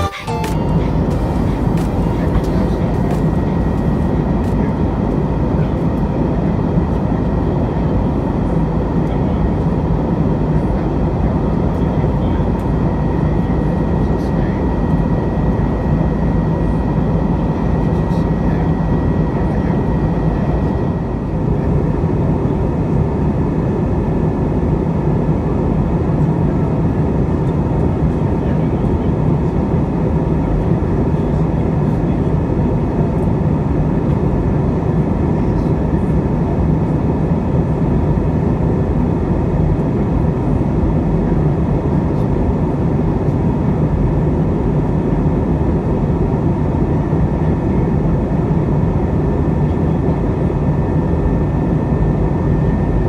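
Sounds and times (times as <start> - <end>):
airplane cabin engine drone: 0.0 - 53.0.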